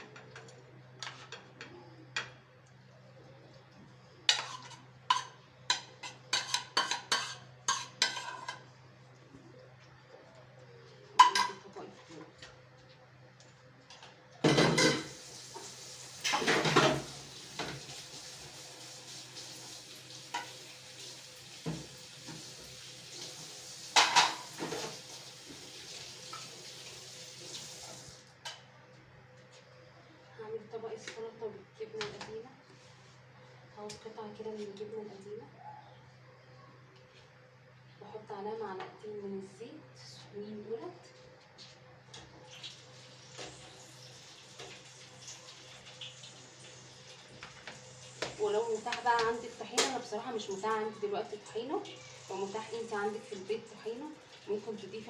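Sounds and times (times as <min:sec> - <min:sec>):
spoon clinking against plates: 0:04.3 - 0:08.7, 0:11.2 - 0:11.6.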